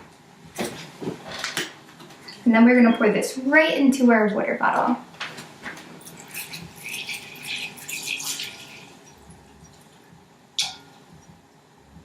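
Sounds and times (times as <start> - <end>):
liquid pouring into plastic bottle: 6.2 - 9.3.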